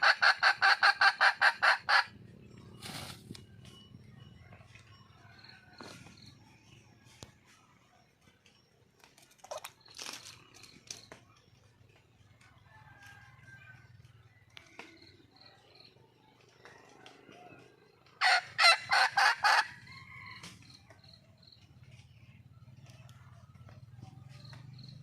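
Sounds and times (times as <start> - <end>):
junglefowl hen calling: 0.0 - 3.6, 17.3 - 20.6.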